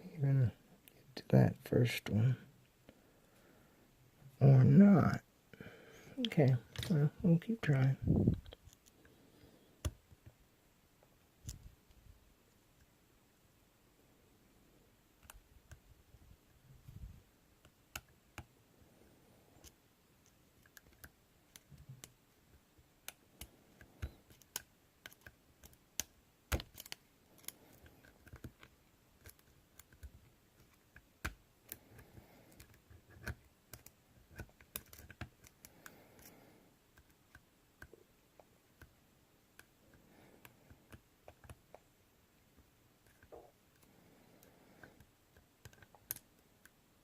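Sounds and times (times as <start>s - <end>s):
lock pick clicking and scraping: 23.0s - 36.3s.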